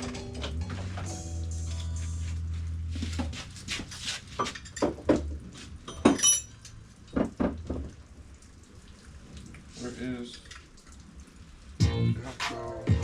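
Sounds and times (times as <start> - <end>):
metal tools clinking and knocking: 5.9 - 6.7.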